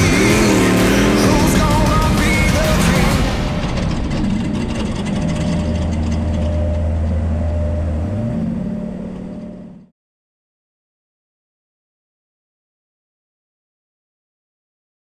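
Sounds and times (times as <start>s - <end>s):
race vehicle engine running: 0.0s - 9.9s.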